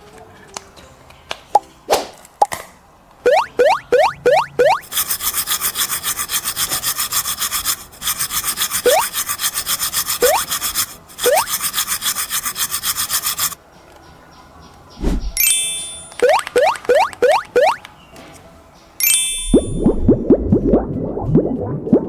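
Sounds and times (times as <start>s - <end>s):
quick rising blips: 3.3s - 4.9s, 8.9s - 9.1s, 10.2s - 10.4s, 11.2s - 11.5s, 15.0s - 17.9s
fast back-and-forth rasping: 3.3s - 13.6s.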